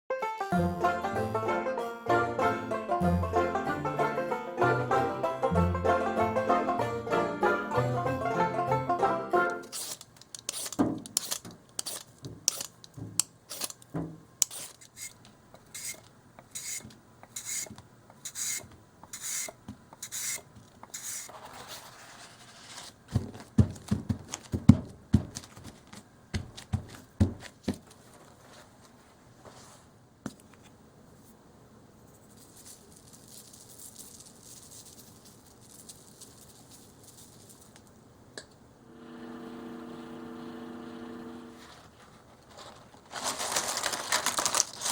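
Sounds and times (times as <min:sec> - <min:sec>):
potato scraped against blade: 0:09.6 - 0:12.8, 0:13.5 - 0:13.8, 0:14.4 - 0:22.9
dull knocks: 0:23.1 - 0:25.4.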